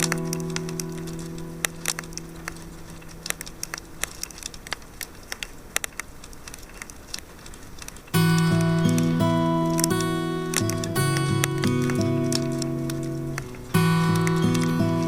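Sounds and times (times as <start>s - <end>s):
guitar chord: 0.0s - 3.7s, 8.2s - 15.0s
wood fire crackling: 0.0s - 15.0s.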